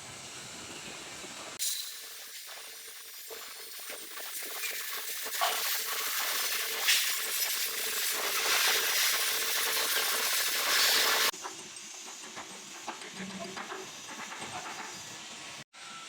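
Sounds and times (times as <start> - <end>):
welding arc crackling: 1.7 - 11.3.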